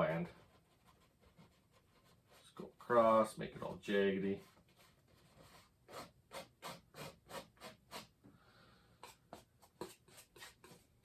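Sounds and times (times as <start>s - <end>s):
palette knife scraping paint: 4.4s - 8.2s, 9.0s - 11.0s.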